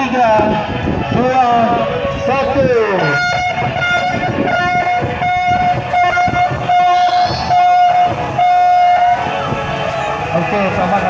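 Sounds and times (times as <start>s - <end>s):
horn short blasts: 3.0s - 9.3s.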